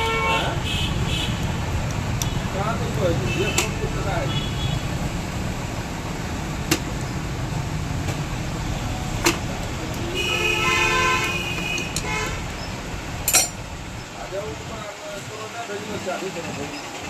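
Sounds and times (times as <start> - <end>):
vehicle horn: 0.0 - 1.4, 3.3 - 4.9, 10.0 - 12.5
low traffic rumble: 0.0 - 17.0.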